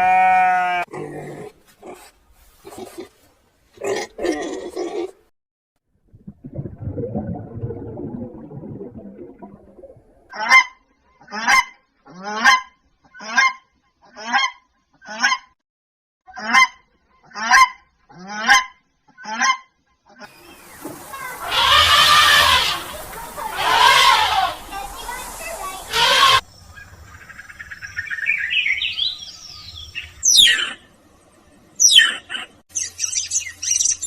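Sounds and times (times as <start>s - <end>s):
goose calling: 21.3s - 26.4s.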